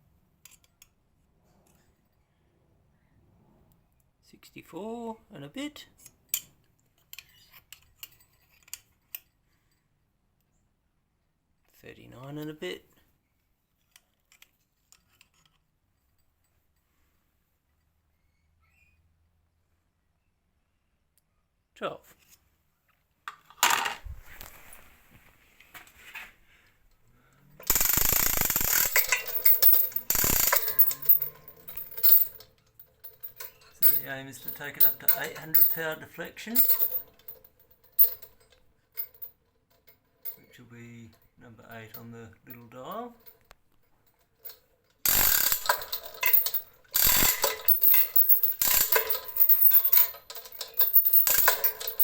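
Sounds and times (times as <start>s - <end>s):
ratcheting clicks: 27.6s - 37.4s, 44.5s - 52.0s
chain rattling through chain block: 27.6s - 40.6s, 41.9s - 52.0s.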